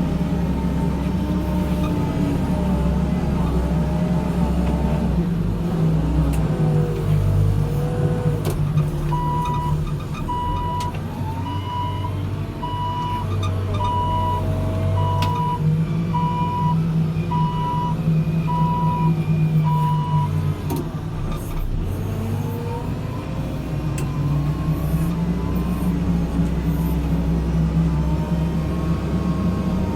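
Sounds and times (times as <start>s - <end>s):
diesel engine running: 0.0s - 29.9s
reversing alarm beeping: 9.2s - 13.2s, 13.8s - 20.4s.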